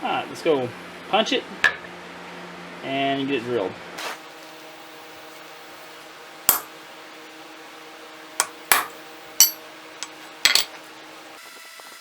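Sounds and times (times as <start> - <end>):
hammer striking metal punch: 6.5 - 6.7, 8.4 - 10.7.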